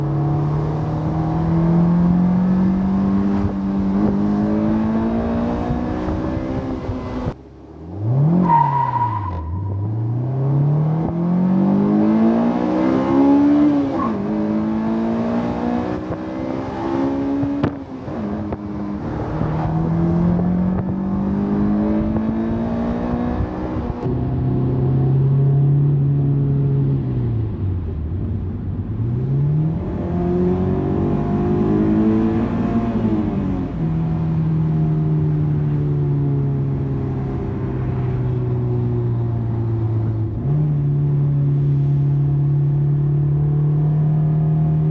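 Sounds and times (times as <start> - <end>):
car engine revving through gears: 0.0 - 26.9, 29.0 - 44.9.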